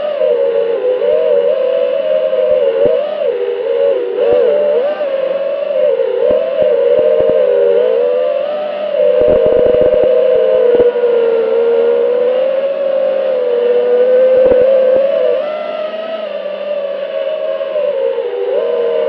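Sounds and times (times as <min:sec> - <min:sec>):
quadcopter motors whining: 0:04.2 - 0:08.1, 0:09.0 - 0:11.0, 0:14.0 - 0:16.3.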